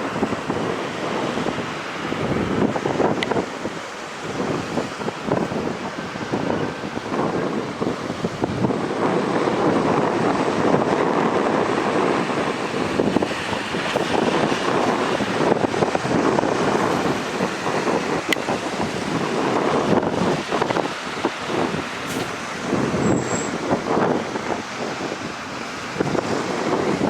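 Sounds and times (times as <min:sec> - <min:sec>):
helicopter engines and rotor rumble: 0:00.0 - 0:27.0
wind buffeting microphone: 0:00.0 - 0:27.0.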